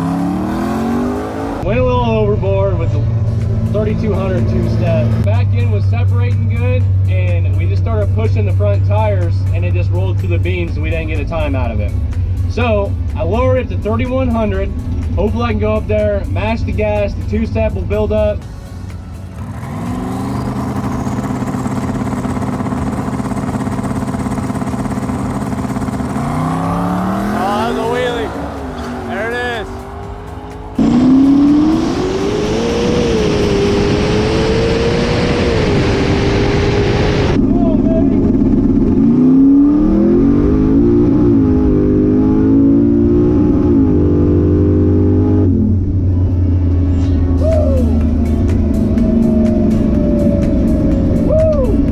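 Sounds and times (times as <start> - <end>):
car engine stuttering on rev limiter: 0.0 - 1.8, 19.3 - 37.5, 38.1 - 45.9.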